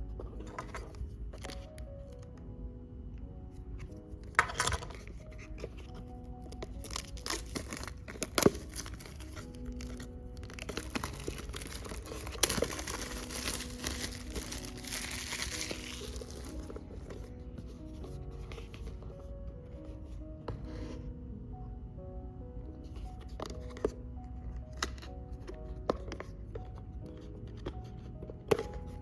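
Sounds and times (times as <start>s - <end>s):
soft background music: 0.0s - 29.0s
plastic packaging crinkling: 4.3s - 19.1s.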